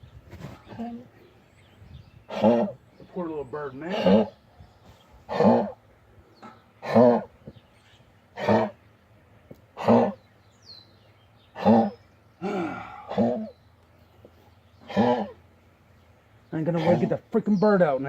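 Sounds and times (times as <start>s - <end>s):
dog barking hoarsely: 6.8s - 7.3s, 8.4s - 8.8s, 13.0s - 13.5s.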